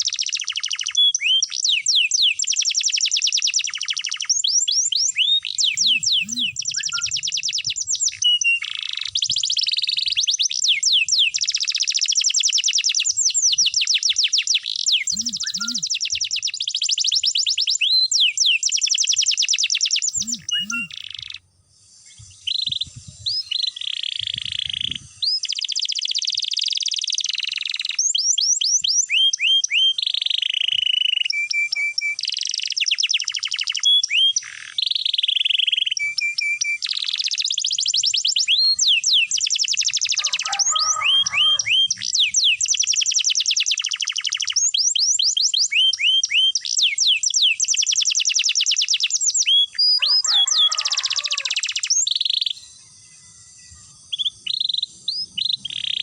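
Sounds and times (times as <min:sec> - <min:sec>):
canary singing trills: 0:00.0 - 0:21.5, 0:22.1 - 0:31.2, 0:36.7 - 0:56.0
rough chattering bird phrase: 0:05.5 - 0:07.5, 0:14.9 - 0:16.0, 0:20.1 - 0:21.4, 0:40.1 - 0:42.6, 0:50.0 - 0:52.4.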